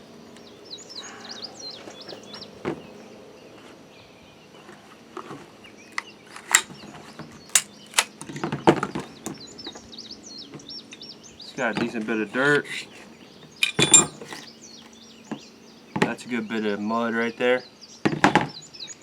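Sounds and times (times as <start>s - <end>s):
birds chirping: 0.2s - 16.6s
pistol parts clicking: 6.0s - 6.8s, 7.5s - 8.3s, 13.6s - 14.4s.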